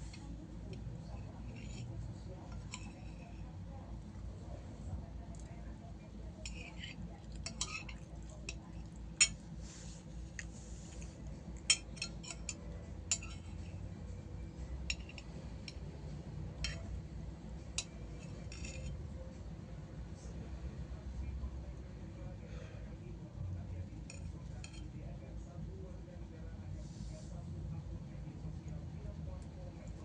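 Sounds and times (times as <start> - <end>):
cutlery clinking on a plate: 1.1 - 3.4, 6.4 - 9.4, 11.6 - 13.9, 14.8 - 15.9, 16.5 - 17.0, 17.7 - 19.0, 24.0 - 24.9.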